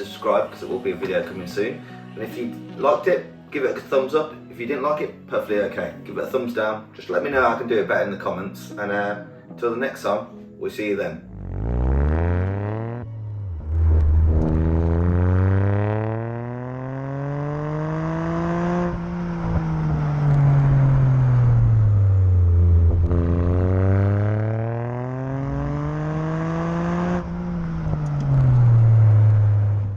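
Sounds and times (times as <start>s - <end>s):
car engine revving: 11.2s - 29.9s.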